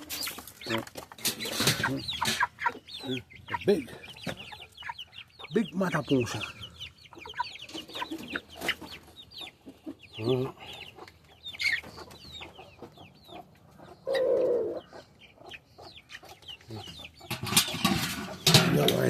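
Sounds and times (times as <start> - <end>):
chickens clucking: 0.0 - 19.0
loud chicken call: 14.0 - 14.9.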